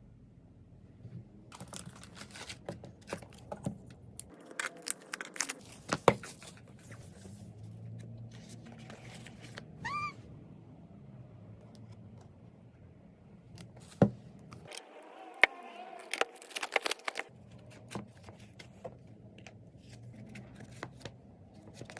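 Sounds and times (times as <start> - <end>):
packaging crinkling and tearing: 1.5 - 3.5, 4.3 - 6.5, 15.9 - 17.4
squeak-like tone: 9.8 - 10.2.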